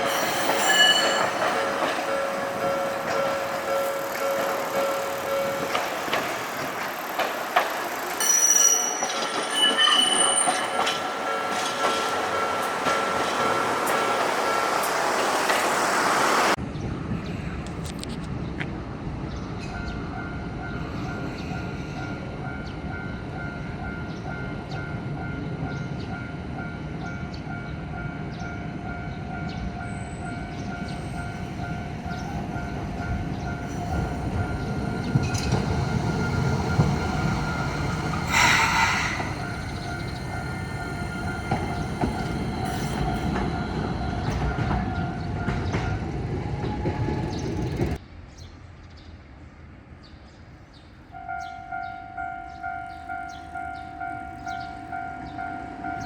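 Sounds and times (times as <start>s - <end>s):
crossing alarm pulsing: 0.0s - 15.1s, 29.8s - 48.0s
tram rumbling: 0.0s - 56.0s
wheels clicking over rail joints: 0.5s - 15.8s, 30.2s - 48.0s
short hissing burst: 38.2s - 39.8s.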